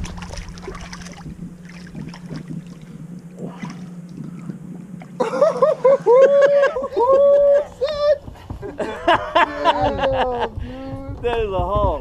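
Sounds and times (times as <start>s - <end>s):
high wavering whine-like calls: 0.0s - 8.5s
steady low hum: 0.0s - 12.0s.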